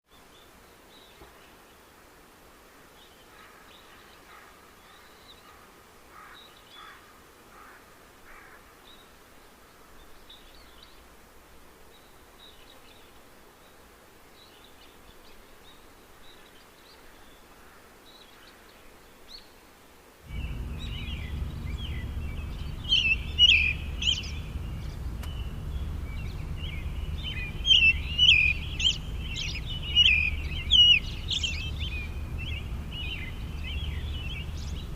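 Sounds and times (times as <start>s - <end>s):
low rumble: 20.3s - 34.9s
songbirds chirping: 20.3s - 34.9s.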